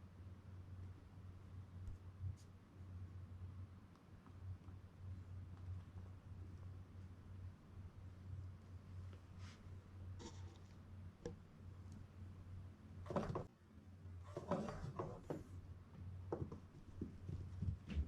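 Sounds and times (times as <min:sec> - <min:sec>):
steady low hum: 0:00.0 - 0:18.0
kittens scrabbling at roller blind: 0:13.1 - 0:13.5, 0:14.3 - 0:15.5.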